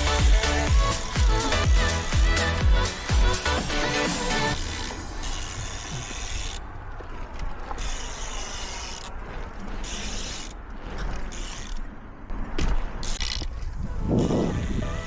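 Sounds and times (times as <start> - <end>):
low rumble: 0.0 - 5.6
bicycle freewheel ratcheting: 0.0 - 6.8, 7.7 - 10.6, 11.3 - 11.8, 13.0 - 13.5.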